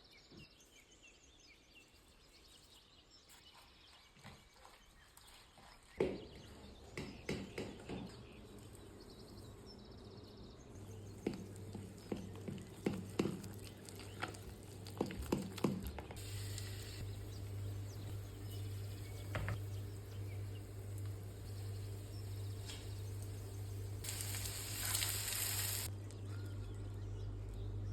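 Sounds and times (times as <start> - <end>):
batter sizzling in hot oil: 16.2 - 25.9.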